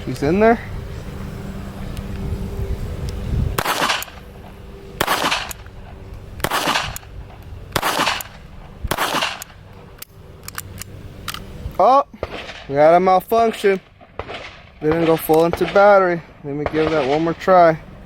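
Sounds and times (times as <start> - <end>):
low rumble: 0.0 - 18.0
pistol shots: 3.6 - 4.2, 5.0 - 5.6, 6.4 - 7.0, 7.7 - 9.6, 12.2 - 12.7, 13.5 - 16.0, 16.6 - 17.5.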